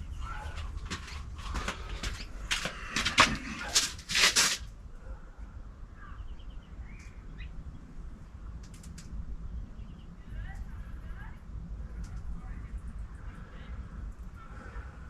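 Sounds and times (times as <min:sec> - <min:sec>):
faint bird chirps: 0:05.0 - 0:07.9
light clicks: 0:08.6 - 0:09.2.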